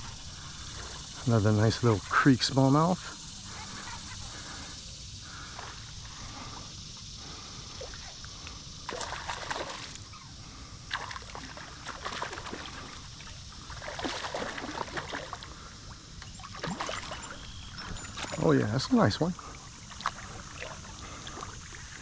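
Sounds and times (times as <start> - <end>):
water sloshing and splashing: 0.0 - 2.3, 7.7 - 10.3, 10.9 - 22.0
creek flow hiss: 0.0 - 22.0.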